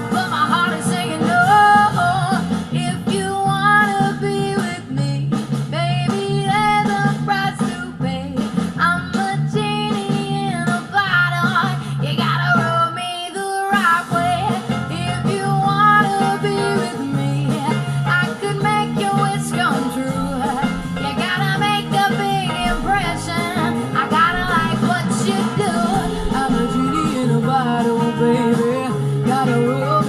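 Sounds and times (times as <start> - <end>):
pop music with singing: 0.0 - 30.0.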